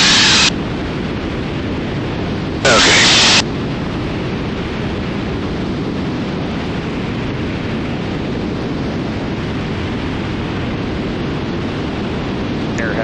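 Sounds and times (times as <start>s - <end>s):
airplane cruising roar: 0.0s - 13.0s.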